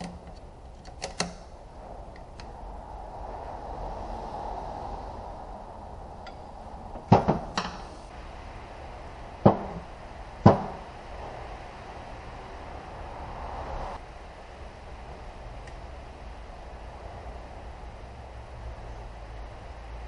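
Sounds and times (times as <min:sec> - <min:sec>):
steady background hum: 0:00.0 - 0:20.0.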